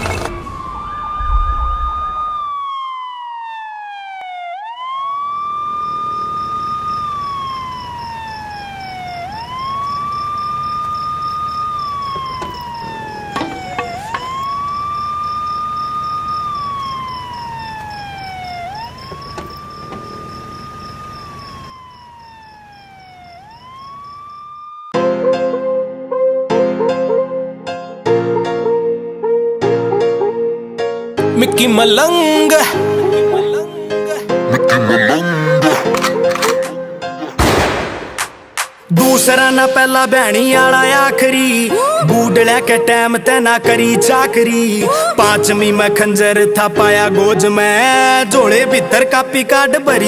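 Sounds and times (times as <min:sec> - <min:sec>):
siren wailing: 0:00.0 - 0:25.0, 0:34.1 - 0:37.5.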